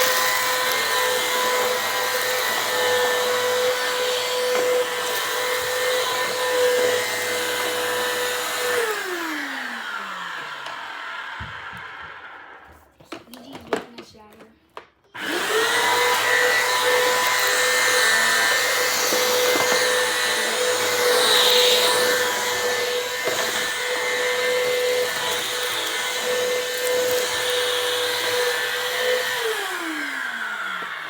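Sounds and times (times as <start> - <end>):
vacuum cleaner motor whine: 0.0 - 12.8, 15.1 - 31.0.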